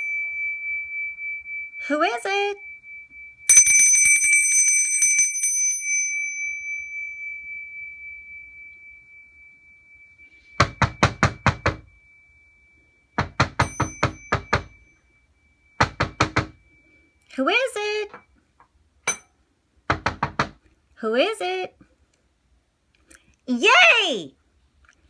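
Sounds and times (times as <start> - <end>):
bell ringing: 0.0 - 0.6, 3.5 - 7.5, 13.6 - 15.0, 19.1 - 19.3
knocking on a door: 10.6 - 11.9, 13.2 - 14.8, 15.8 - 16.6, 19.9 - 20.6.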